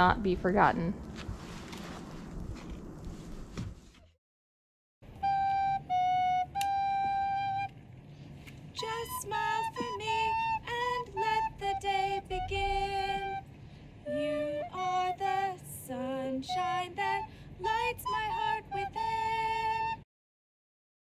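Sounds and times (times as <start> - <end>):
high voice singing: 8.8 - 13.4.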